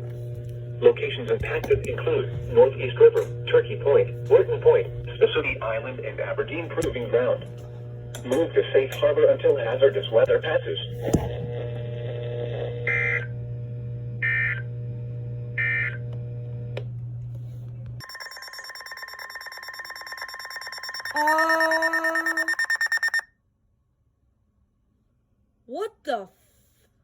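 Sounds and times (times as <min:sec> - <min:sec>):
low hum: 0:00.0 - 0:18.0
buzzy data blips: 0:18.0 - 0:23.2
radio alert tone beeping: 0:18.0 - 0:23.2.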